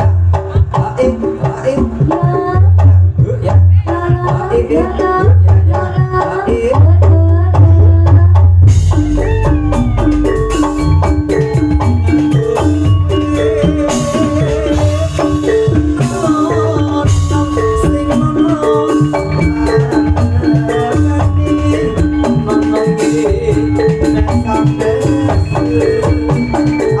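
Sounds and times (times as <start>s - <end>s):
drum steady beat: 0.0s - 27.0s
mallet-struck metallophones: 8.6s - 27.0s.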